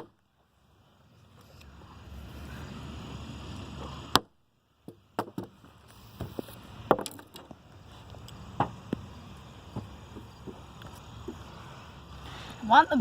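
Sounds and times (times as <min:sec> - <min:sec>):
faint background hiss: 0:00.0 - 0:13.0
hatchet chopping strikes: 0:04.1 - 0:04.3.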